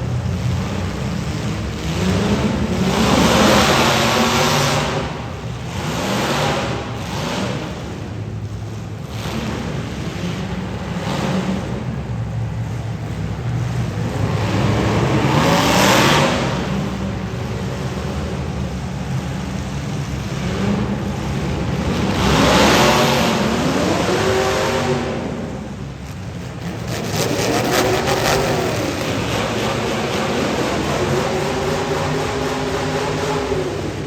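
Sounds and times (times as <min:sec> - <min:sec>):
car engines revving hard: 0:00.0 - 0:34.0.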